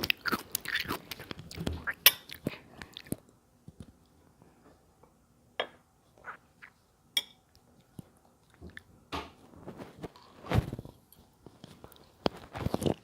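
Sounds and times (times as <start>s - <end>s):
soft chewing: 0.0s - 4.7s, 7.5s - 9.0s, 9.6s - 13.0s.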